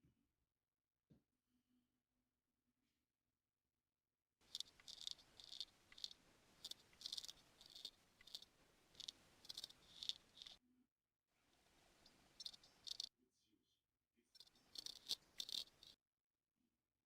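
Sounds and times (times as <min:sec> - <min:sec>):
crisp scratching strokes in ear: 0:04.5 - 0:10.6, 0:11.7 - 0:13.1, 0:14.4 - 0:16.0.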